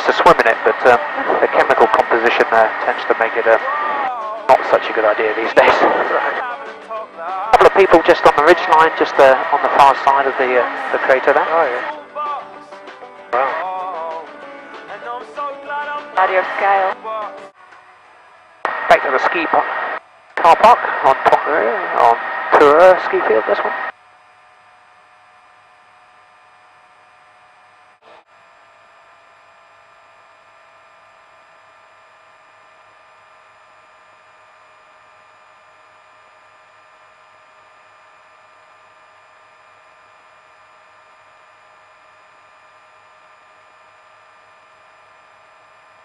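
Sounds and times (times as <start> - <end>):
intercom hiss and hum: 0.0 - 14.2, 15.8 - 30.2.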